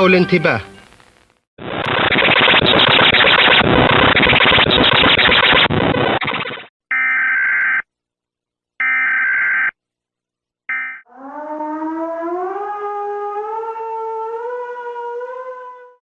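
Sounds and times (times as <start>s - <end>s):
siren winding up: 1.6s - 7.8s
emergency alert tones: 10.7s - 12.5s.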